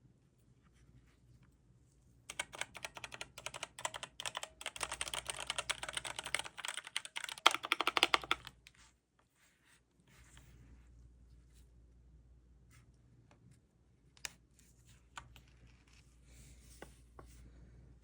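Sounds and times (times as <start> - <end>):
mechanical keyboard typing: 2.3 - 8.6.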